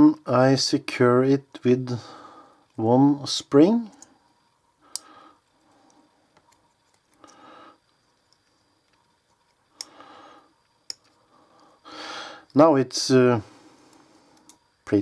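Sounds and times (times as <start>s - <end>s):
faint handling noise: 3.6s - 11.8s.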